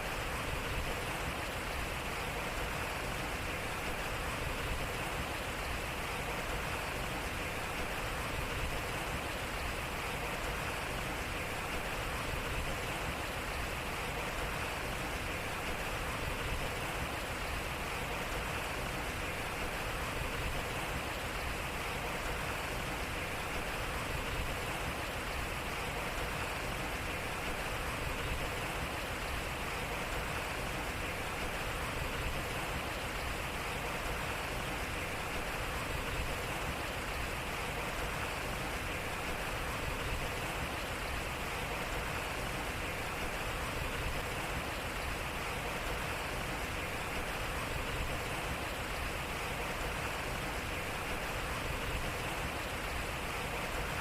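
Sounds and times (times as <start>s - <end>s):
water rushing at water wheel: 0.0s - 54.0s.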